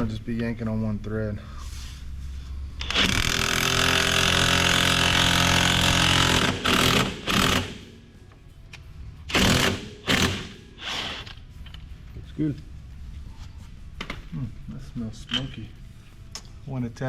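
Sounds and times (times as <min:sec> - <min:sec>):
impact wrench hammering: 0:02.8 - 0:08.0, 0:09.3 - 0:11.2.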